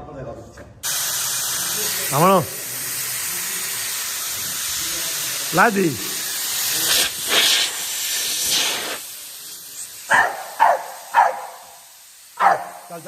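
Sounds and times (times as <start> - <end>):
hissing water spray: 0.8 - 13.0
dog barking: 10.1 - 11.7, 12.4 - 12.8.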